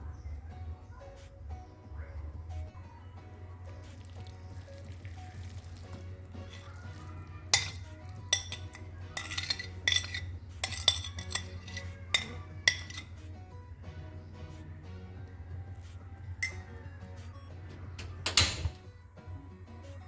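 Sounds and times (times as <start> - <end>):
background music: 0.0 - 20.0
metal utensil clinking on cookware: 5.9 - 13.3, 16.4 - 16.8, 18.0 - 18.8.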